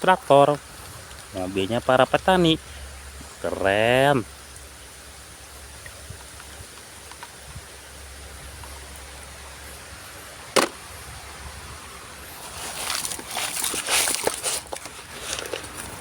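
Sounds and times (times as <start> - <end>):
faint steady hiss: 0.0 - 16.0
toys clattering and rustling: 12.4 - 16.0.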